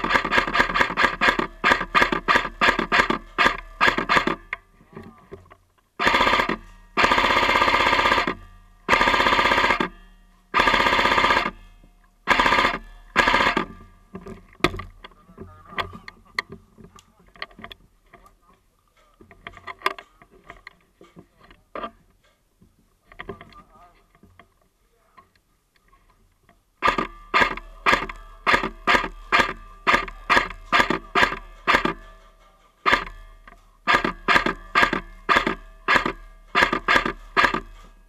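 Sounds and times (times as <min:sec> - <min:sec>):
airsoft gun bursts: 0:00.0 - 0:04.6, 0:06.0 - 0:13.9, 0:26.8 - 0:32.2, 0:32.8 - 0:37.8.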